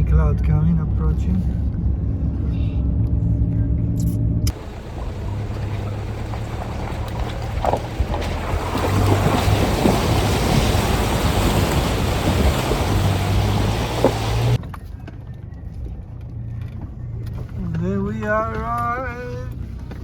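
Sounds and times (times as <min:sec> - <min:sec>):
vehicle engine drone: 0:00.0 - 0:18.2
rushing wind and road noise: 0:01.0 - 0:14.8.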